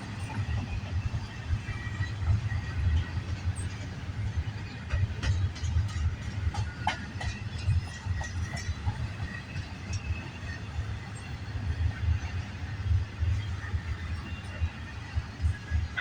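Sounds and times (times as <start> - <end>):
train cars rumbling past: 0.0 - 16.0
wheels clacking over rail joints: 0.1 - 10.4.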